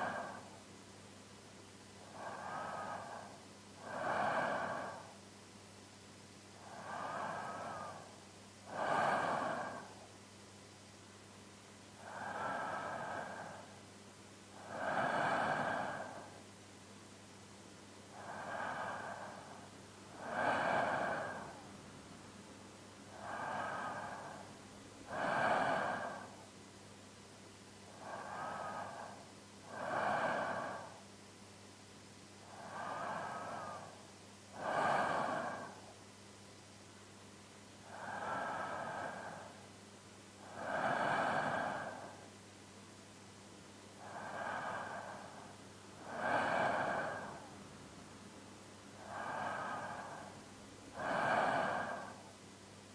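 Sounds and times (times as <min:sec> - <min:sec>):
man breathing in sleep: 0:00.0 - 0:00.6, 0:02.0 - 0:05.2, 0:06.6 - 0:10.2, 0:12.0 - 0:13.8, 0:14.6 - 0:16.5, 0:18.1 - 0:22.0, 0:23.1 - 0:26.6, 0:27.8 - 0:31.1, 0:32.4 - 0:36.0, 0:37.8 - 0:39.8, 0:40.4 - 0:42.3, 0:44.0 - 0:48.0, 0:49.0 - 0:52.4.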